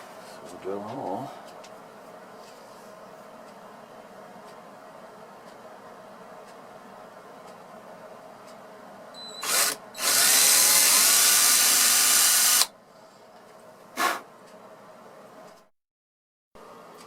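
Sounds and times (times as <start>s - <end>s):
power drill boring into wood: 9.4s - 12.7s.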